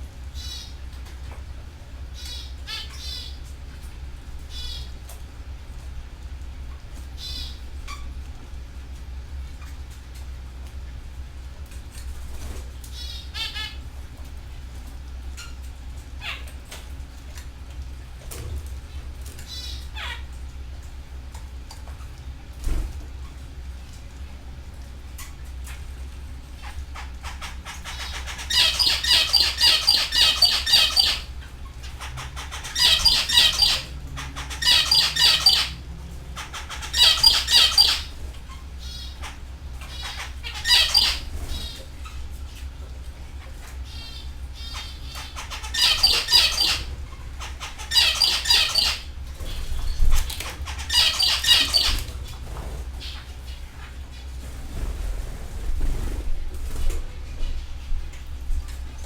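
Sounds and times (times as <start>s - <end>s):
canary singing trills: 0.3s - 0.8s, 2.1s - 3.5s, 4.5s - 5.0s, 7.2s - 8.1s, 12.9s - 13.8s, 19.5s - 20.3s, 26.6s - 42.2s, 43.7s - 52.2s, 53.0s - 54.3s.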